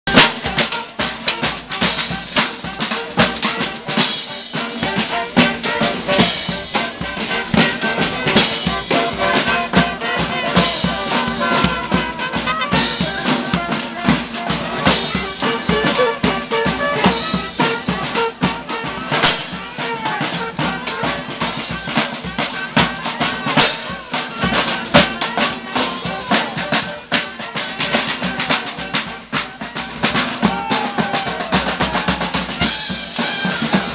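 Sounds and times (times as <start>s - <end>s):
brass band horns: 0.1s - 33.9s
snare and bass drums: 0.1s - 33.9s.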